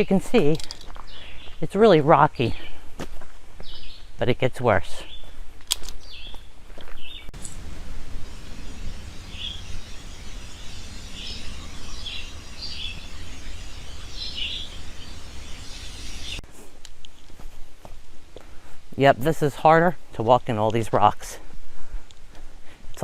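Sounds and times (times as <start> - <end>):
birds chirping: 1.0 - 2.8, 3.6 - 4.2, 6.0 - 16.4
steady hiss and low rumble: 7.4 - 21.2.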